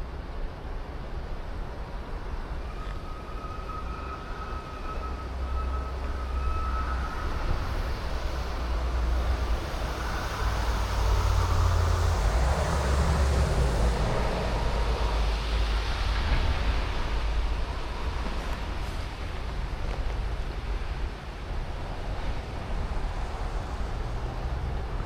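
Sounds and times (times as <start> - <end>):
traffic rumble: 0.0 - 25.0
vehicles passing: 7.3 - 25.0.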